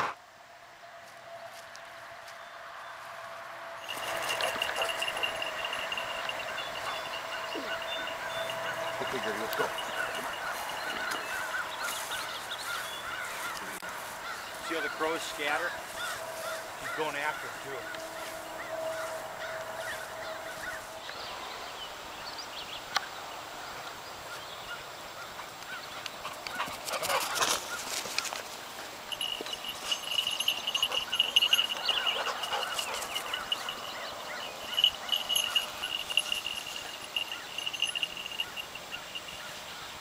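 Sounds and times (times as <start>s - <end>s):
steady high ringing tone: 3.8s - 12.4s, 29.1s - 39.9s
crows cawing: 3.8s - 20.9s, 29.2s - 39.2s.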